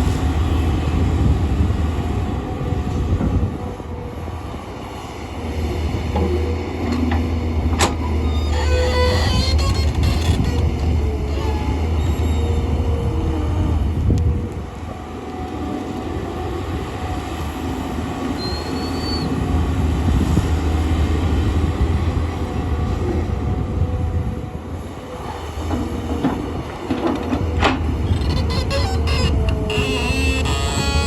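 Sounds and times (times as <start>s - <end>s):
excavator diesel engine running: 0.0s - 31.0s
high metallic squeals: 8.2s - 12.6s, 28.0s - 31.0s.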